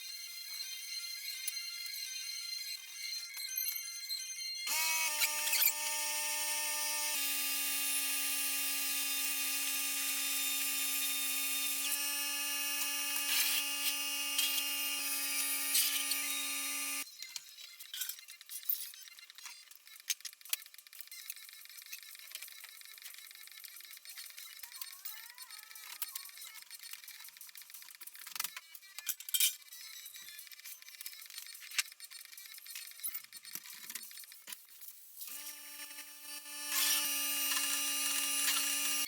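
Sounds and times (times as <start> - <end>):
power tool motor whine: 4.6 - 17.1, 35.3 - 39.0.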